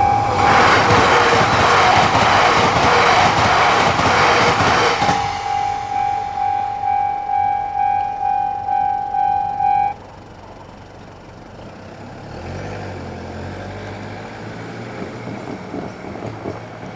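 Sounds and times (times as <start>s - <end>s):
level-crossing warning bell: 0.0s - 10.5s
low engine rumble: 0.0s - 11.9s.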